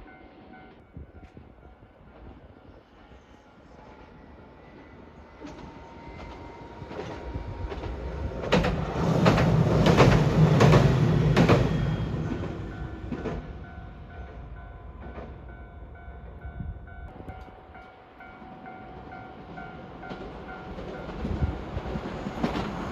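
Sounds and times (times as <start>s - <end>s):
train wheels clicking over rail joints: 5.4s - 14.4s.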